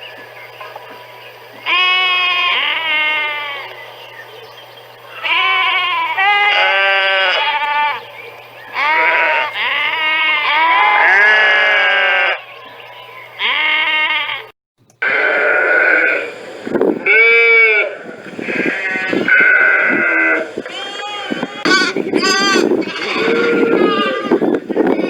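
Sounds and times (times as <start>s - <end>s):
sheep bleating: 1.7s - 3.7s, 5.1s - 8.0s, 8.8s - 12.4s, 13.4s - 16.2s, 17.0s - 25.0s.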